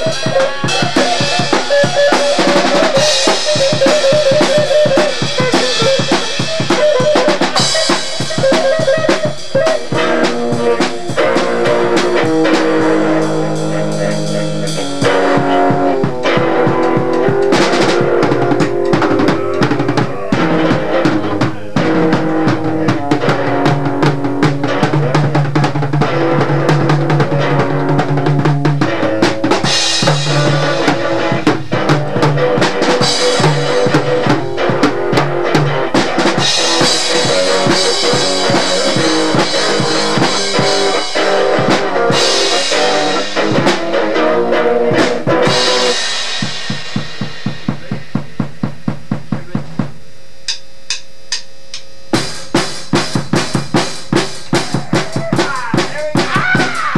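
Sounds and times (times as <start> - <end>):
held pitched instrument notes: 0.0 - 48.4
drum kit pounding: 0.0 - 56.9.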